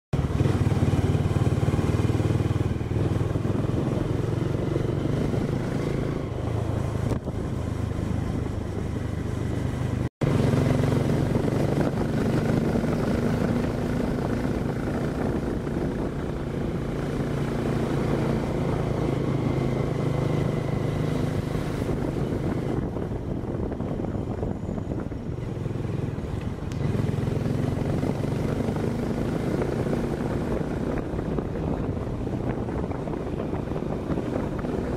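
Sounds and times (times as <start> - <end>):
motorbike engine running: 0.2 - 34.9.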